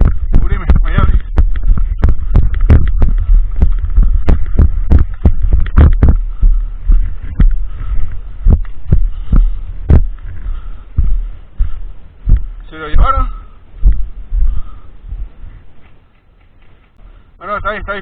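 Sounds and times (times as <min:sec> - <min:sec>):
low rumble: 0:00.0 - 0:16.0.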